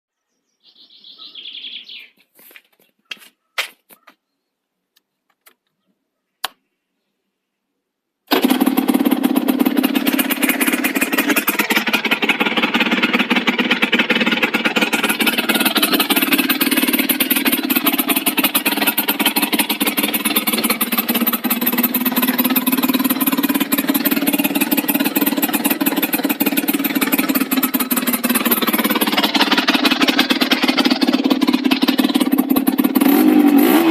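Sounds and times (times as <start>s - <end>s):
two-stroke motorcycle engine running: 8.3s - 33.9s.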